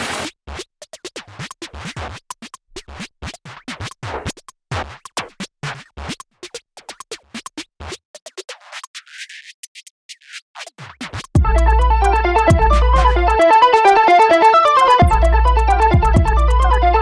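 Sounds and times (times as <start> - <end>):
electronic music: 11.4 - 17.0
record scratching: 12.0 - 16.8.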